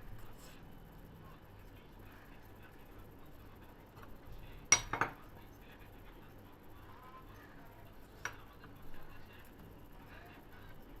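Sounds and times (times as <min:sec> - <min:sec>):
utensil clinking on a plate: 0:04.7 - 0:05.2.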